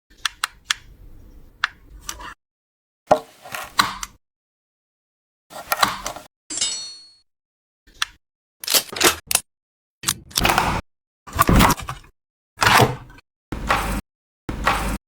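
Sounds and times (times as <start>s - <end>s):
clicks and clinks of parts: 7.9s - 9.4s.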